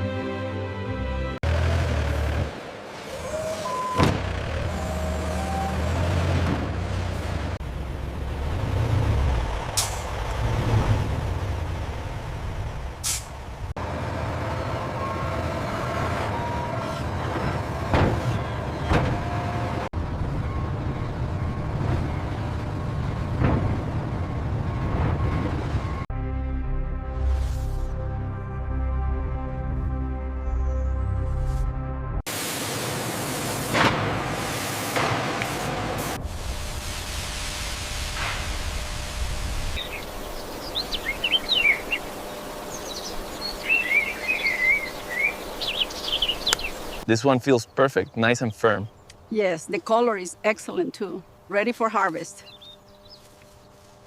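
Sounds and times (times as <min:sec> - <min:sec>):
outdoor background: 0:00.0 - 0:54.0
factory machinery rumbling: 0:01.4 - 0:26.1, 0:32.3 - 0:47.0
loud steady hiss: 0:32.3 - 0:40.8
small birds chirping: 0:39.8 - 0:49.8, 0:52.1 - 0:53.9.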